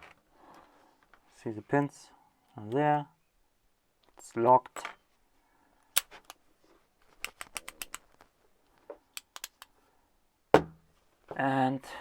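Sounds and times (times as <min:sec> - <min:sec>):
padlock clicks and taps: 0:07.2 - 0:08.0, 0:09.2 - 0:09.7.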